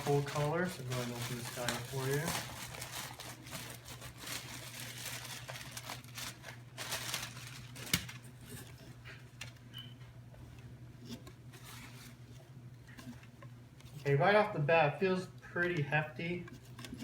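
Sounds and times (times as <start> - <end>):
packaging rustling and crinkling: 0.0 - 9.7, 11.5 - 13.4.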